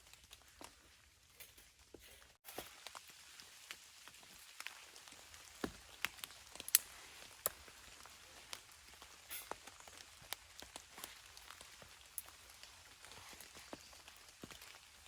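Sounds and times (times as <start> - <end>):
raindrops tapping on a tarp: 2.4 - 15.0
faint rain hiss: 2.5 - 15.0.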